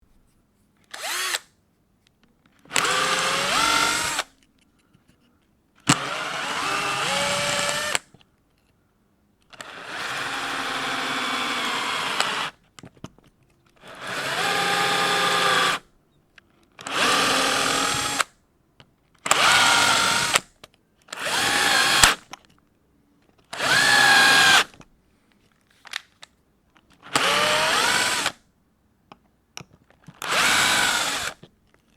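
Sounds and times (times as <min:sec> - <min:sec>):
power drill driving screws: 0:00.9 - 0:01.5, 0:02.7 - 0:04.3, 0:05.9 - 0:08.1, 0:09.6 - 0:12.6, 0:13.9 - 0:15.8, 0:16.8 - 0:18.3, 0:19.3 - 0:20.5, 0:21.1 - 0:22.2, 0:23.6 - 0:24.8, 0:27.1 - 0:28.4, 0:30.2 - 0:31.4.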